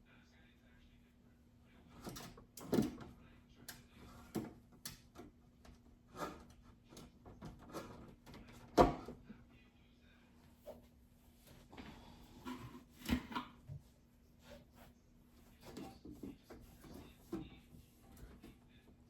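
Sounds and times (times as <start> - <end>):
refrigerator drawers clattering: 2.0 - 3.1.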